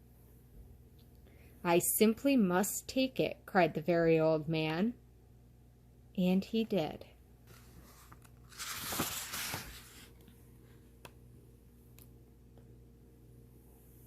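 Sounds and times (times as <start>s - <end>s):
book page turning: 7.5s - 10.2s.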